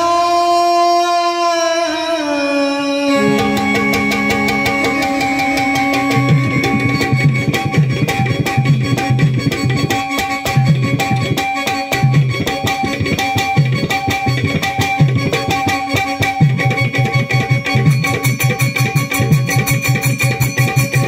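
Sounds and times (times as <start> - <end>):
melodic instrument notes: 3.1 - 9.0
hand drums playing rhythm: 3.2 - 21.0.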